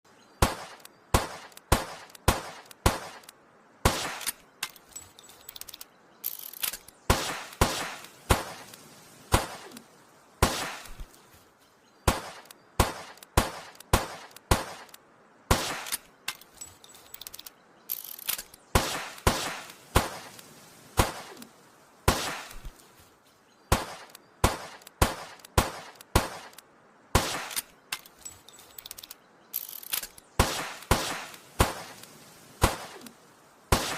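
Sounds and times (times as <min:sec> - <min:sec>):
revolver gunshots: 0:00.4 - 0:04.4, 0:07.1 - 0:09.8, 0:10.4 - 0:11.1, 0:12.0 - 0:14.9, 0:15.5 - 0:16.1, 0:18.7 - 0:20.4, 0:21.0 - 0:22.7, 0:23.7 - 0:27.7, 0:30.4 - 0:33.9.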